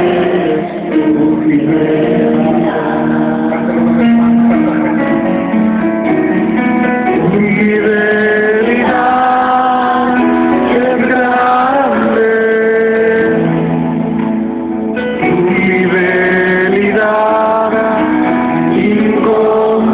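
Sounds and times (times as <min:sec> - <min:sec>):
voices singing in harmony: 0:00.0 - 0:04.8, 0:07.2 - 0:13.6, 0:15.2 - 0:19.9.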